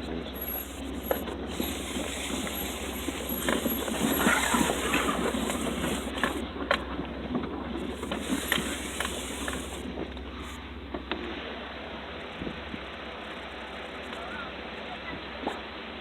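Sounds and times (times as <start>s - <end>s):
tyres on rock and gravel: 0.0s - 10.7s
engine rumble: 0.0s - 16.0s.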